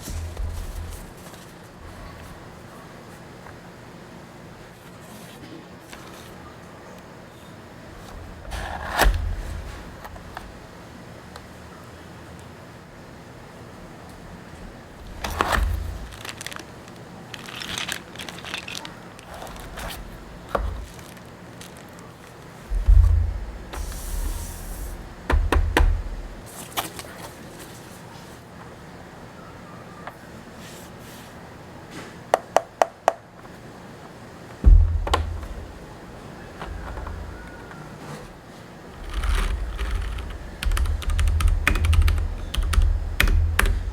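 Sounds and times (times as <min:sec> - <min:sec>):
heavy low knock: 0:00.0 - 0:01.2, 0:08.1 - 0:10.9, 0:14.6 - 0:16.2, 0:19.3 - 0:21.0, 0:22.7 - 0:26.4, 0:34.6 - 0:37.6, 0:39.0 - 0:43.9
packaging crinkling and rustling: 0:14.9 - 0:25.1
knock on table: 0:22.7 - 0:26.4, 0:34.7 - 0:35.8
thump on table: 0:22.7 - 0:26.4, 0:34.6 - 0:35.8.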